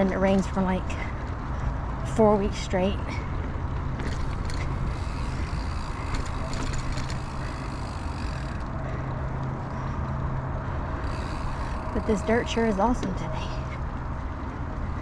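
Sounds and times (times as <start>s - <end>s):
wind: 0.0s - 15.0s
bike clicks and rattles: 3.1s - 15.0s
bike tyres rumbling on dirt: 3.8s - 9.8s, 11.0s - 13.0s.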